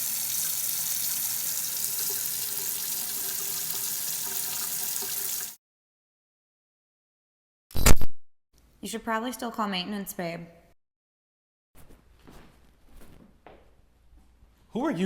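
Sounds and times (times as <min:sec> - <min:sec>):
water running from tap: 0:00.0 - 0:05.6.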